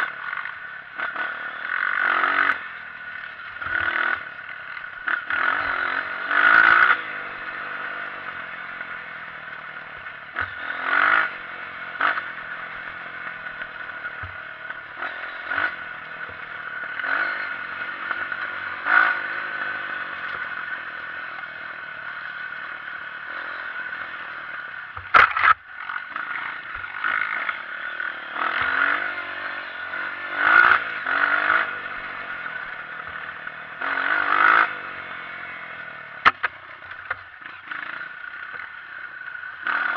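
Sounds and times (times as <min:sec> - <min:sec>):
clattering and scraping from bike: 0:00.0 - 0:07.5, 0:22.4 - 0:34.9, 0:36.1 - 0:39.9
motorcycle engine revving: 0:00.0 - 0:39.9.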